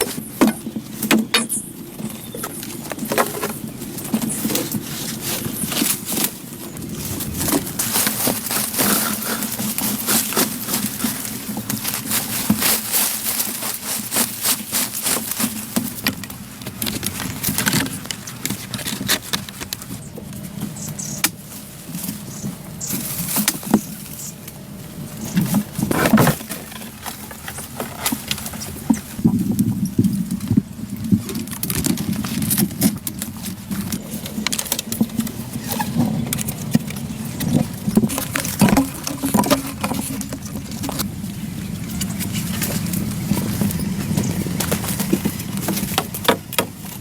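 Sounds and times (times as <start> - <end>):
knocks taps and scraping: 25.2 - 41.3.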